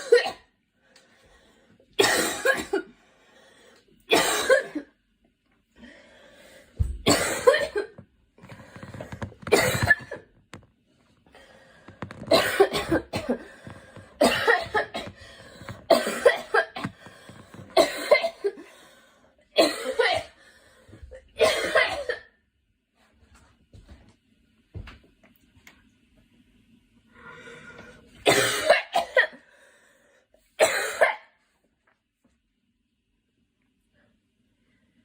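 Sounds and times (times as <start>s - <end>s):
girl coughing: 2.0s - 2.9s, 4.1s - 4.9s, 7.0s - 8.0s, 9.5s - 10.2s, 12.3s - 13.5s, 14.2s - 18.6s, 19.6s - 20.4s, 21.4s - 22.4s, 28.3s - 29.4s, 30.6s - 31.4s.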